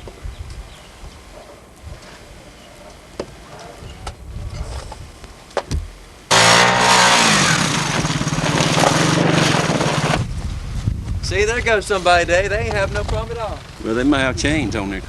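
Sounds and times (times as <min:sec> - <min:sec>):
wind noise: 0:00.0 - 0:01.2, 0:01.8 - 0:02.4, 0:03.8 - 0:05.9, 0:09.0 - 0:15.0.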